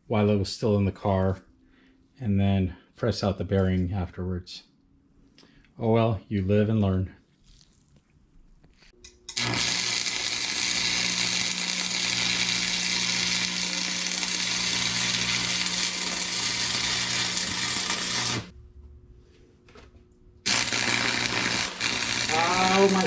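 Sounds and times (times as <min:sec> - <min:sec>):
power grinder grinding steel: 0:09.3 - 0:18.5, 0:20.5 - 0:23.0.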